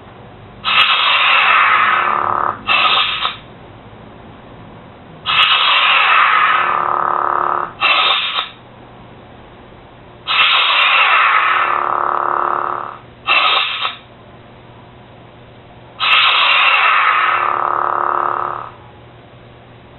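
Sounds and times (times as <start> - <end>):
lightsaber sound effects: 0.6 - 3.4, 5.3 - 8.6, 10.3 - 14.0, 16.0 - 18.8
faint low hum: 1.7 - 2.8, 6.3 - 7.8, 11.3 - 13.4, 14.0 - 19.9.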